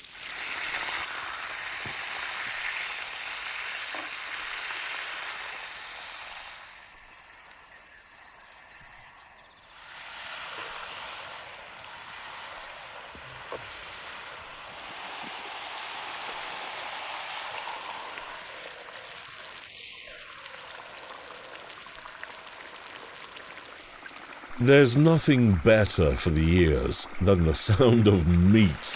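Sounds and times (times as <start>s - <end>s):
steak sizzling in a skillet: 0.0s - 6.8s, 9.7s - 24.6s.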